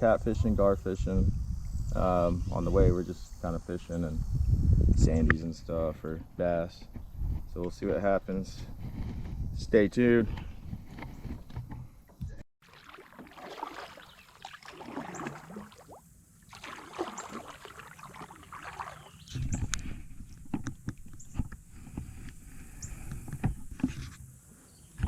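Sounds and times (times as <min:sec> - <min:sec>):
kayak paddle swishing through water: 0:12.6 - 0:24.2.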